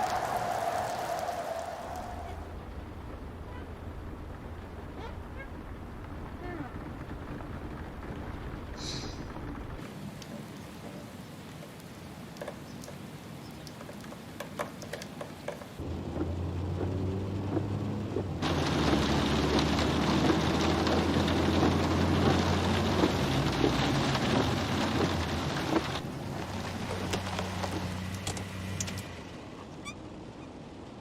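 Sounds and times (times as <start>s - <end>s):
low rumble of thunder: 0.0s - 9.8s
rain drips: 0.0s - 29.6s
rain falling: 0.0s - 31.0s.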